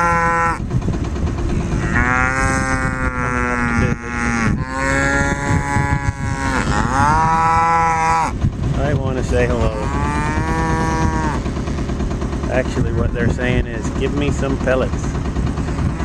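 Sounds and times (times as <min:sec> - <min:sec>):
cows mooing: 0:00.0 - 0:00.7, 0:01.6 - 0:08.4, 0:09.4 - 0:11.5, 0:15.6 - 0:16.0.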